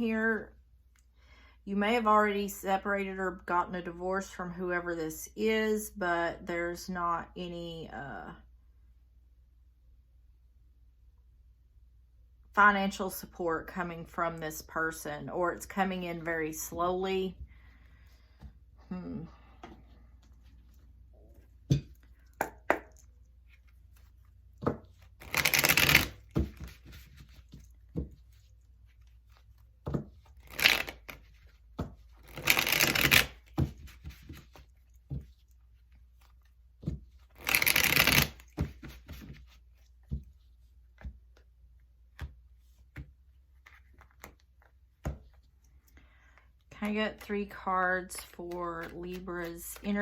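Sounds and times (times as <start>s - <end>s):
cards tapping and clicking: 22.2s - 28.4s, 29.3s - 35.6s, 36.2s - 41.5s, 42.1s - 45.5s, 48.2s - 50.0s
cards being shuffled: 22.7s - 41.5s, 42.1s - 45.9s, 48.1s - 50.0s.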